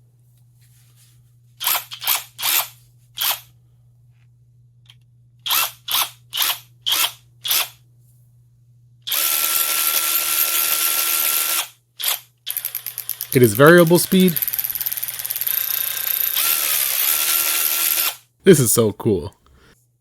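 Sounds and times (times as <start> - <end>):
cordless electric ratchet whining: 9.1 - 13.4, 14.1 - 18.2.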